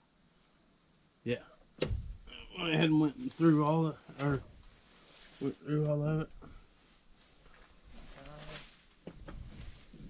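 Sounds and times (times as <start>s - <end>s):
crickets chirping: 0.0s - 10.0s
person speaking: 2.2s - 4.4s.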